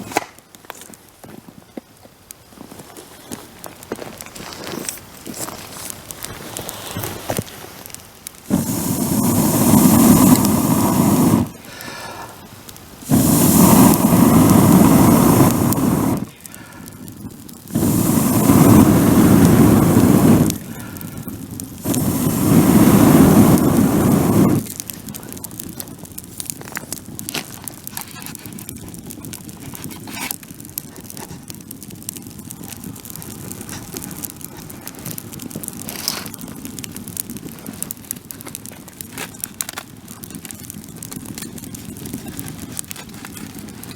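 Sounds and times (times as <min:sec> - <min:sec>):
bonfire crackling and popping: 0:00.0 - 0:43.9
rushing blowing air: 0:08.5 - 0:27.9.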